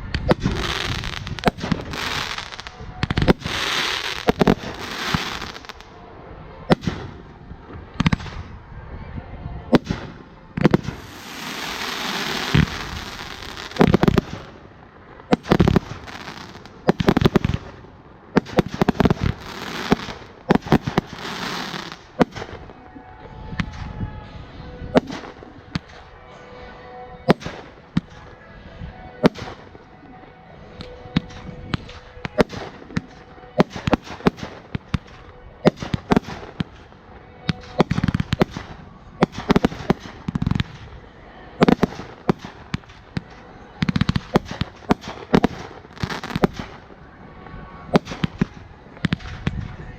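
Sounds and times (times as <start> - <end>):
firework cracks and bangs: 0.1 - 5.8, 9.7 - 14.7, 15.3 - 17.8, 18.4 - 22.7.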